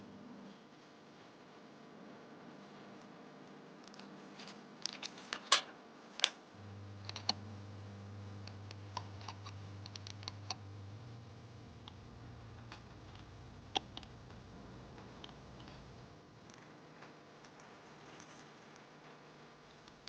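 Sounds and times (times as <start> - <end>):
low steady hum: 6.5 - 20.0.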